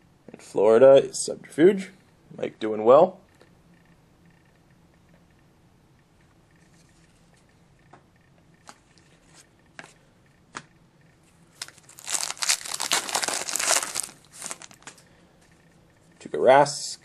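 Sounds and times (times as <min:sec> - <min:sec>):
foil wrapper crinkling and tearing: 0:11.6 - 0:15.0.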